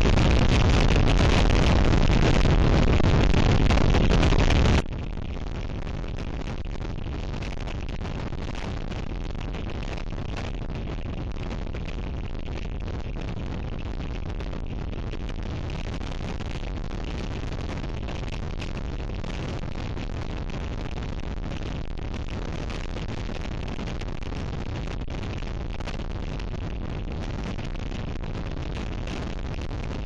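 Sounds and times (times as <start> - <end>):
strong wind on microphone: 0.0 - 19.7.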